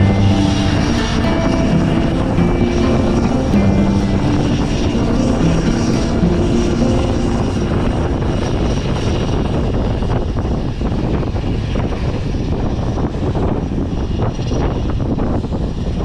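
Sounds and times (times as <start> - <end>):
music: 0.0 - 9.5
helicopter rotor and engine drone: 0.0 - 16.0.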